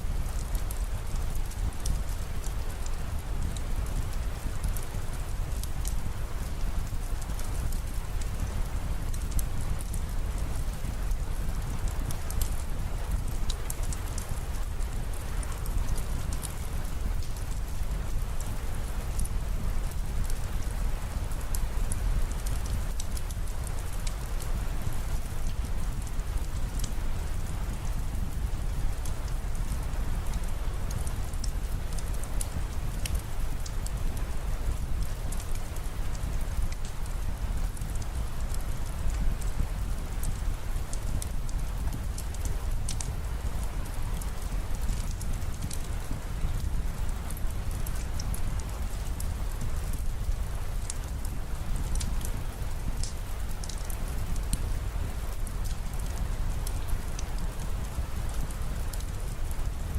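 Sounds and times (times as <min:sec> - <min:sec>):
sharp ticks of raindrops: 0:00.0 - 0:59.9
steady rain falling: 0:00.0 - 0:59.9
single raindrops ticking: 0:34.8 - 0:57.7.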